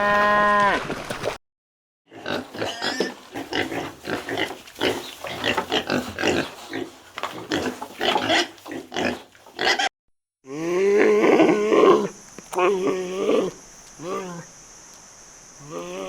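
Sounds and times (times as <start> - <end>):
pigs grunting and squealing: 2.1 - 9.9, 10.5 - 14.5, 15.6 - 16.0.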